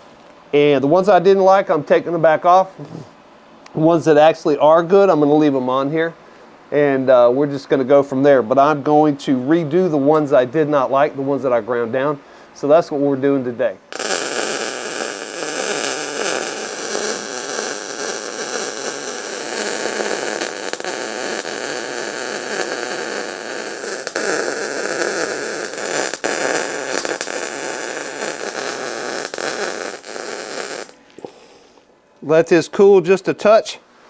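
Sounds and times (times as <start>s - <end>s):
arc welding hiss and clicks: 13.9s - 31.3s.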